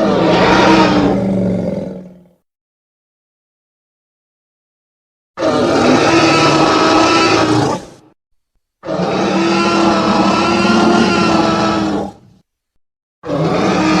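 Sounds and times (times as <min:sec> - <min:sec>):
dinosaur roar: 0:00.0 - 0:02.4, 0:05.4 - 0:08.0, 0:08.8 - 0:12.4, 0:13.2 - 0:14.0.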